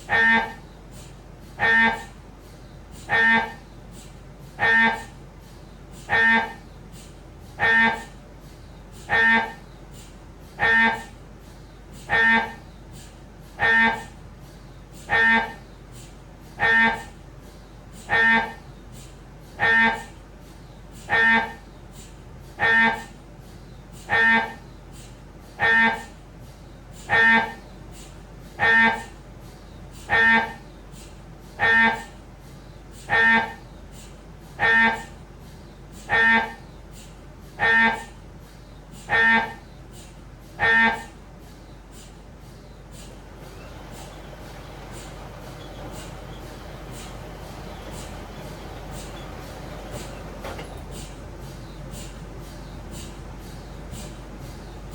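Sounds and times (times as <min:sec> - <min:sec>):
mri scanner pitched buzz: 0:00.0 - 0:54.9
low steady hum: 0:39.6 - 0:54.9.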